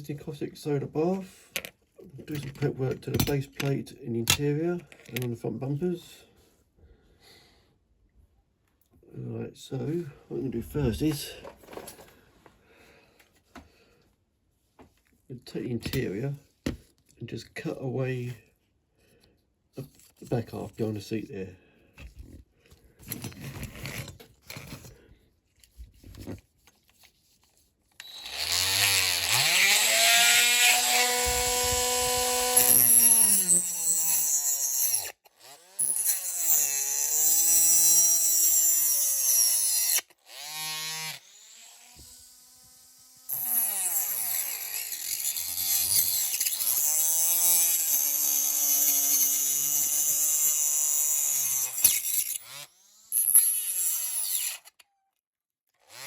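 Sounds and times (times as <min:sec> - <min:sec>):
rotary tool motor whine cutting plastic: 0:28.0 - 0:54.9.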